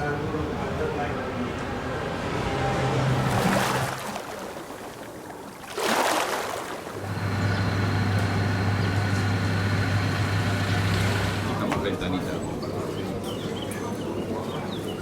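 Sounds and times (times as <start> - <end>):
engine humming steadily: 7.0 - 12.0.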